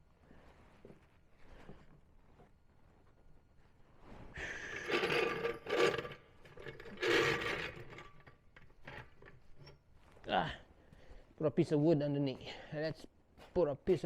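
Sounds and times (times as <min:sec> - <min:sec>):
metal tools grinding and squeaking: 0:04.4 - 0:09.8.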